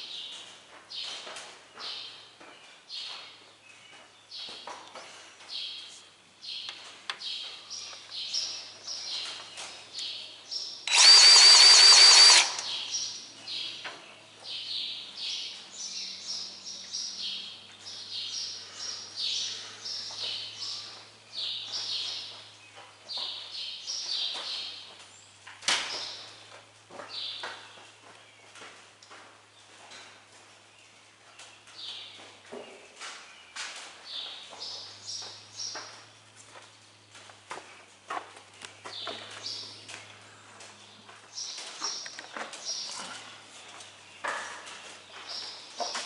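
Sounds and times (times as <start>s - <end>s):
birds chirping: 1.0s - 28.6s, 33.5s - 46.0s
power tool motor running: 10.9s - 12.8s.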